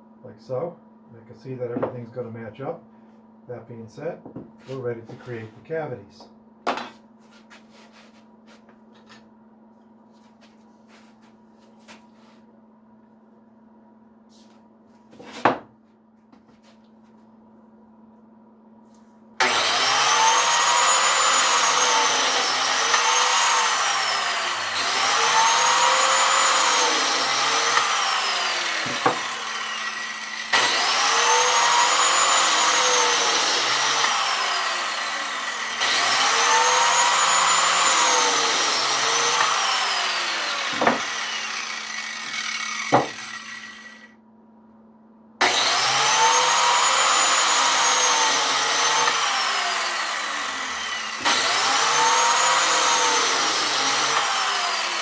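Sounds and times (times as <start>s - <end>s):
biscuit joiner whining: 19.4s - 44.1s, 45.4s - 55.0s
sharp knocks: 42.9s - 43.3s.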